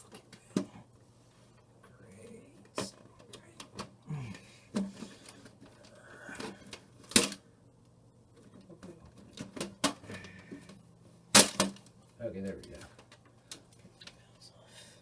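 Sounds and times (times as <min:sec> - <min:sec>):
sharp loud plastic snap: 0:07.0 - 0:07.4, 0:11.3 - 0:11.9.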